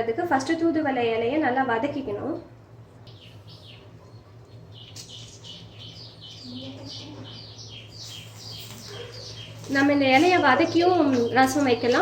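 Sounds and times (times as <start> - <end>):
bird chirping: 3.0 - 12.0.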